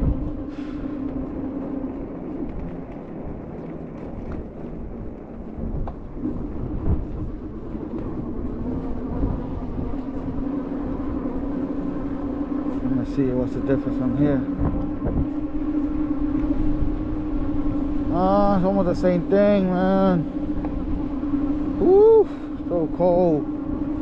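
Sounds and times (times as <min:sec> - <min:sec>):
steady droning hum: 0:00.0 - 0:24.0
wind buffeting microphone: 0:00.0 - 0:24.0.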